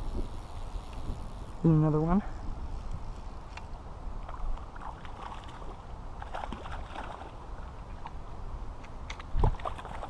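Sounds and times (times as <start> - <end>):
pond water splashing: 4.2 - 10.0.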